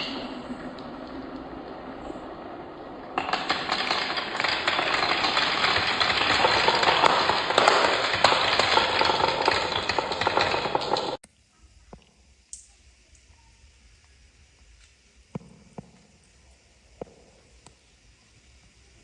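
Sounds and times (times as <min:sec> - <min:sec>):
marbles rattling down wooden run: 0:00.0 - 0:11.2.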